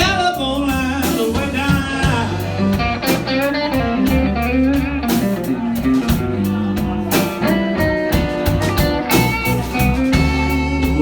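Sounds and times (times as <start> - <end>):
person singing: 0.0 - 3.8
blues guitar: 0.0 - 11.0
live blues band playing: 0.0 - 11.0.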